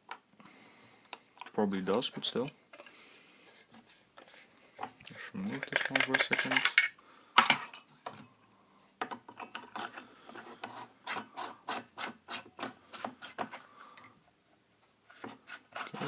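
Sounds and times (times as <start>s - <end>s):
threaded metal parts scraping: 5.4s - 6.9s.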